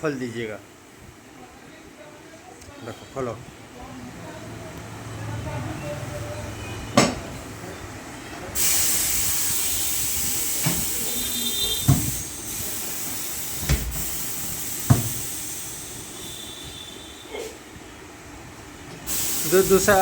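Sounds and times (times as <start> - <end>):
compressed air hissing: 8.6 - 17.6, 19.0 - 20.0.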